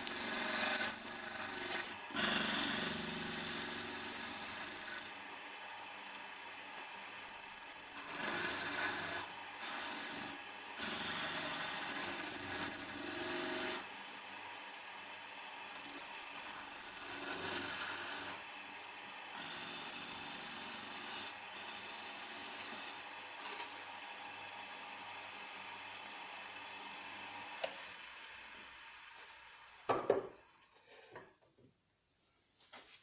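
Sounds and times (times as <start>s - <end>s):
chisel scraping wood on lathe: 0.0s - 5.2s, 7.4s - 13.9s, 15.8s - 18.4s, 19.4s - 23.7s
faint motor hum: 0.0s - 30.8s.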